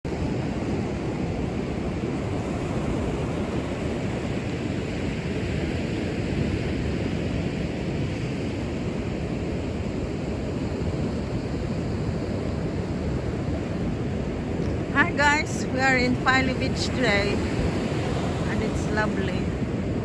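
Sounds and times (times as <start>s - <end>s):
wind rumbling on microphone: 0.0s - 20.0s.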